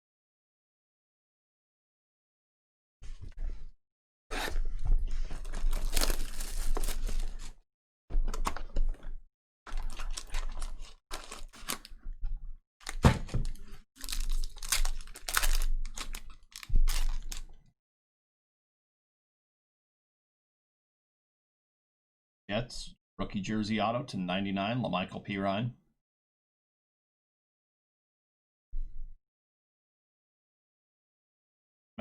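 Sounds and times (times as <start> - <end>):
wrappers tearing and crinkling: 5.4 - 7.6, 9.7 - 12.0, 12.8 - 17.6.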